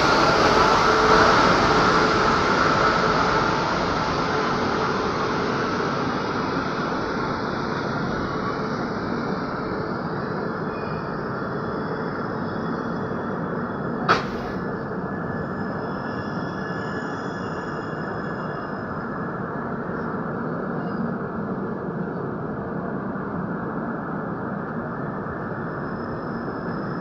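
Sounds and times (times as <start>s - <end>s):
train rumbling on rails: 0.0s - 27.0s
sharp click: 14.1s - 14.7s.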